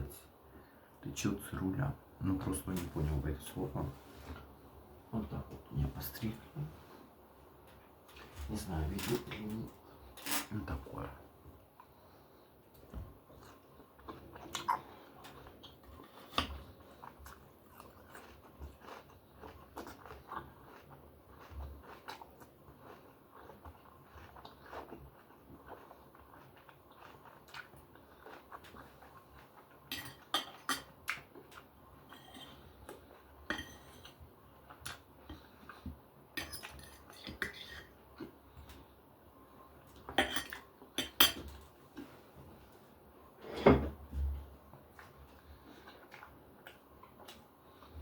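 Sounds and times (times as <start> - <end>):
chewing steak: 12.7 - 38.8
fork and knife clinking on plate: 32.1 - 32.6, 33.5 - 34.2.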